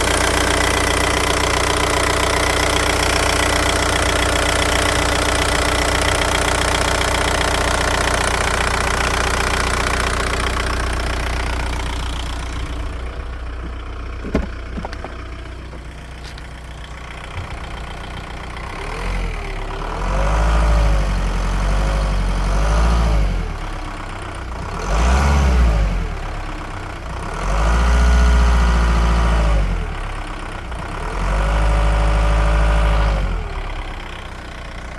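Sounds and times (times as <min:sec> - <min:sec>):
diesel engine ticking: 0:00.0 - 0:34.9
engine revving: 0:18.6 - 0:23.5, 0:24.6 - 0:26.2.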